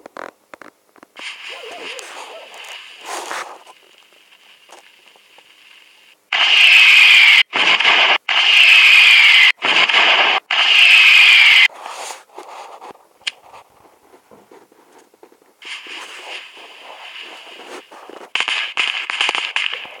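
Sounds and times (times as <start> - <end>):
faint rustling: 0.0 - 6.2, 11.7 - 18.7
firecrackers hissing: 1.2 - 12.8, 15.6 - 20.0
falling whistle: 1.3 - 3.4.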